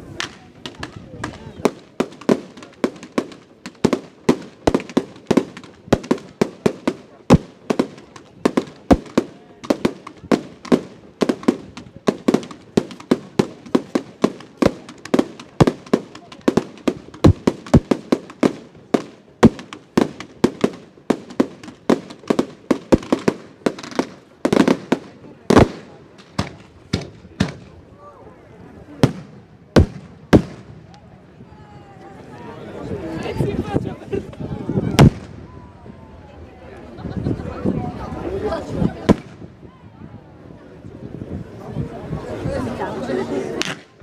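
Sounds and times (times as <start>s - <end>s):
fireworks bursting with echoing bangs: 0.1s - 27.8s, 29.0s - 31.0s, 35.0s - 35.5s, 39.0s - 39.5s, 43.6s - 44.0s.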